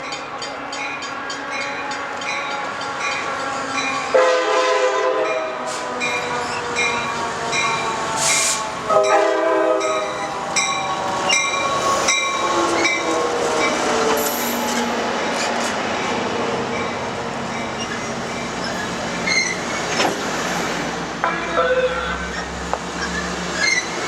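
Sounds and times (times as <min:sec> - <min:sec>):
train horn blasts: 0:03.6 - 0:06.0, 0:08.2 - 0:10.2
crossing warning bell ringing: 0:05.2 - 0:08.0, 0:08.9 - 0:14.8.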